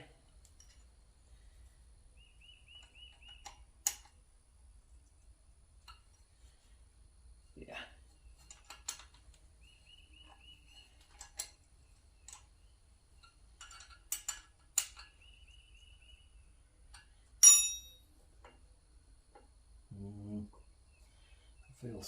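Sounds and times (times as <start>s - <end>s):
metal clicks and knocks: 8.4s - 9.4s, 11.0s - 11.6s, 13.2s - 15.2s
sharp ringing metal clink: 17.4s - 18.1s.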